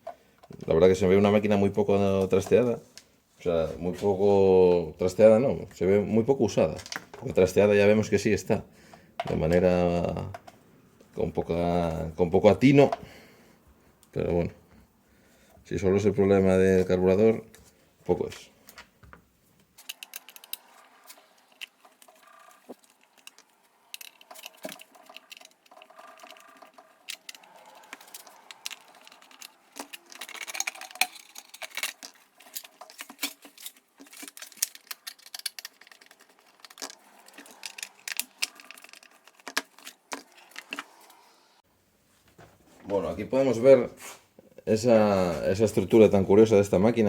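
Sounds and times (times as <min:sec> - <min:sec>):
clicks and scrapes of hand tools: 0:19.7 - 0:41.1.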